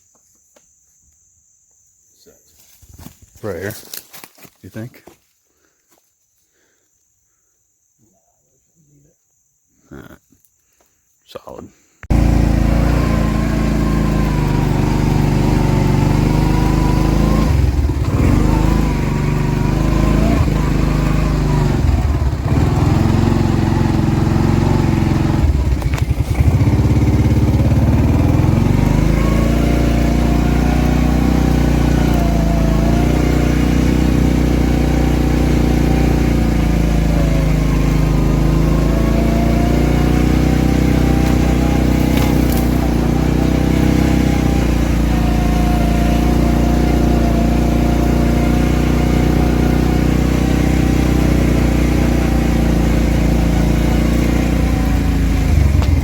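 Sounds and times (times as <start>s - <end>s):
atv engine running: 12.1s - 56.0s.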